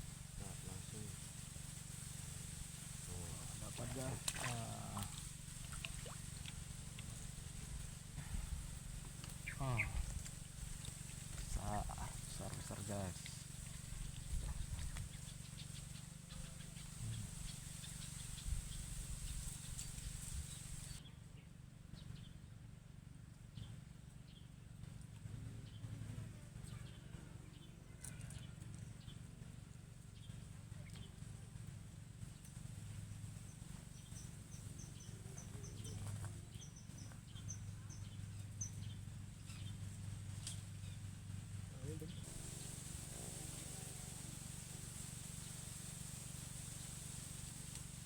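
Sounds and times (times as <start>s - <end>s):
high hiss: 0.0s - 6.8s, 7.4s - 21.0s, 42.2s - 48.0s
small bird chirping: 2.4s - 22.4s, 33.4s - 41.2s.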